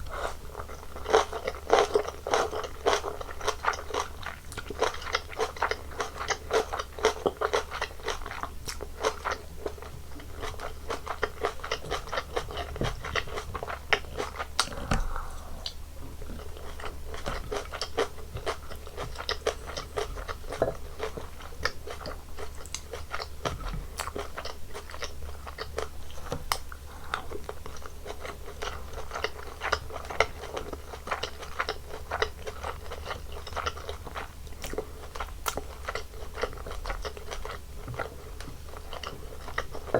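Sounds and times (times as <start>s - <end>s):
chewing and crunching food: 0.0s - 39.9s.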